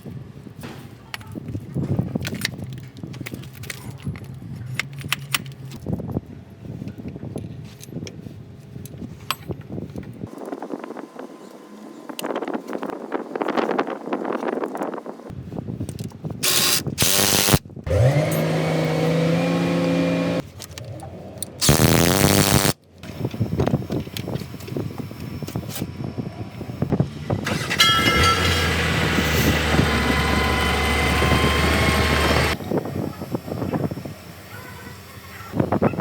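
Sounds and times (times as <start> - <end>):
loud burst of noise: 21.6 - 22.8
heavy vehicle engine running: 24.7 - 34.4.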